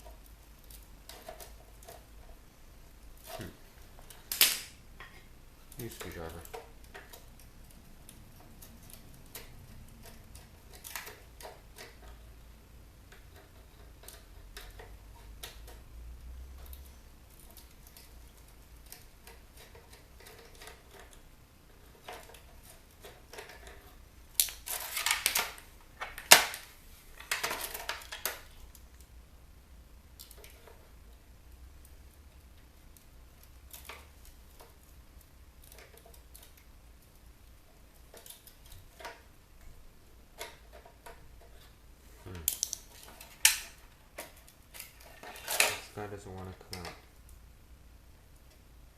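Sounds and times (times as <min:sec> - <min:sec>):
plastic clattering: 0:21.8 - 0:28.5, 0:42.3 - 0:46.0.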